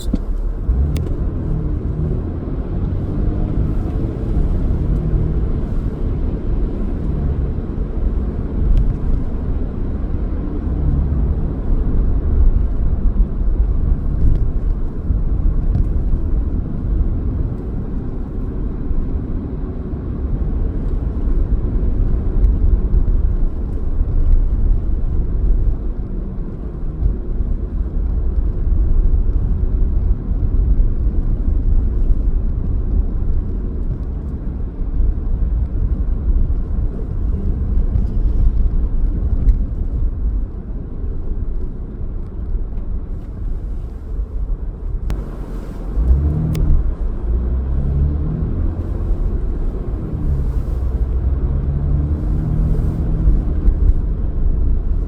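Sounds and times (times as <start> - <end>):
car engine running: 0.0 - 55.0
road rumble: 0.0 - 55.0.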